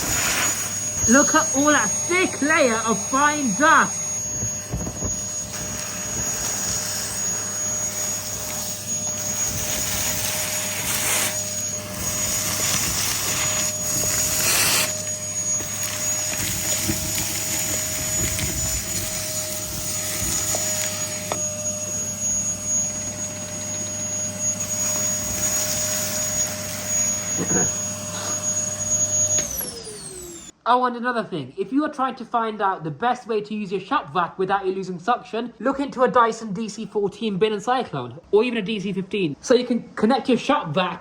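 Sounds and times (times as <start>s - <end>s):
vacuum cleaner motor whine: 0.0s - 30.6s.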